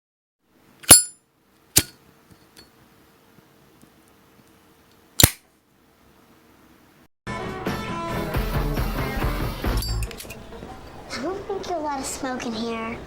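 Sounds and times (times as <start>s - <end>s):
high ringing ping: 0.8s - 1.2s
lighter metallic clicks: 5.2s - 5.4s.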